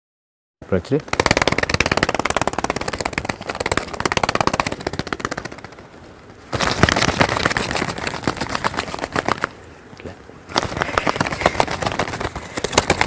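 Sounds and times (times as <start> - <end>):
rapid rattling clicks: 1.1 - 5.9, 10.6 - 13.0.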